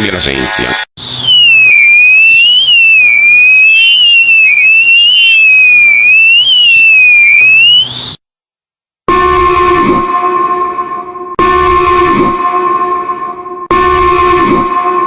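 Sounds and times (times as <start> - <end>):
electronic alarm tone swooping: 1.0 - 8.2.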